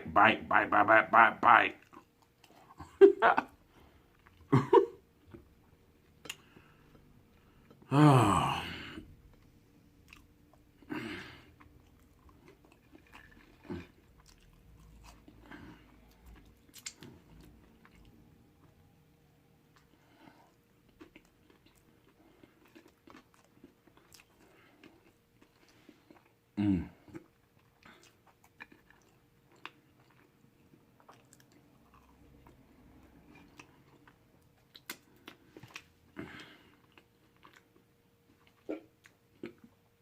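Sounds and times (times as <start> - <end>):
faint steady hum: 0.0 - 40.0
chewing with wet mouth clicks: 9.3 - 10.6, 11.5 - 18.8, 20.6 - 26.4, 27.1 - 36.0, 36.7 - 39.8.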